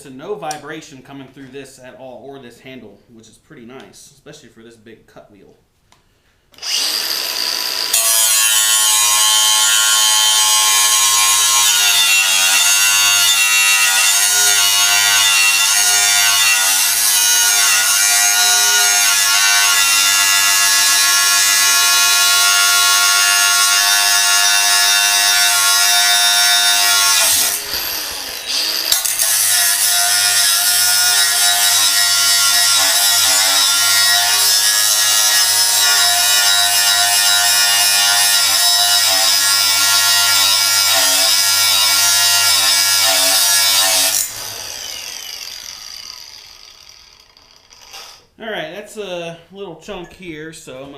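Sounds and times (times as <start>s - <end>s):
angle grinder cutting steel: 6.6s - 48.3s.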